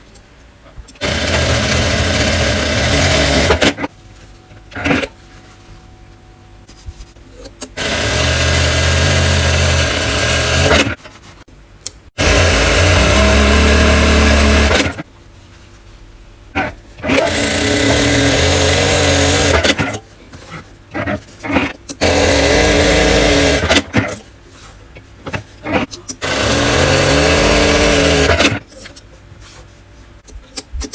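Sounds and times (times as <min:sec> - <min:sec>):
electric sewing machine stitching: 0:01.0 - 0:03.9, 0:07.8 - 0:11.0, 0:12.2 - 0:15.0, 0:16.6 - 0:20.0, 0:21.0 - 0:24.2, 0:25.7 - 0:28.6.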